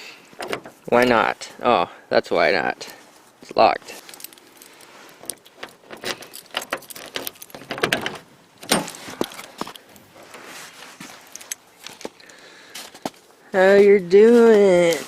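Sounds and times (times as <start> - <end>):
keys jangling: 4.0 - 9.9.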